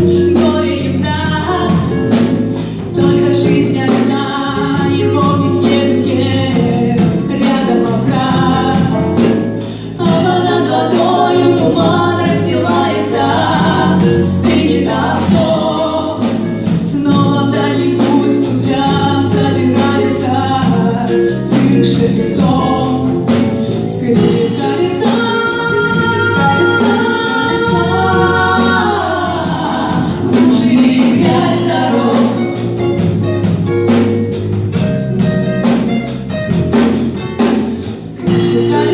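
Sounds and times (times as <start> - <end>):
live rock band: 0.0 - 38.9
women singing in harmony: 2.9 - 32.8, 38.0 - 38.9.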